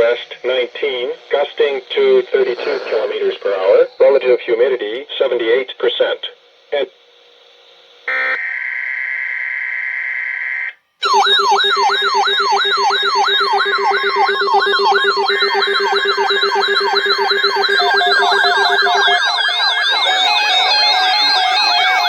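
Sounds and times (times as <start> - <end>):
layered siren-like alarm wails: 8.1 - 22.0
steady electronic alert tone: 11.0 - 22.0.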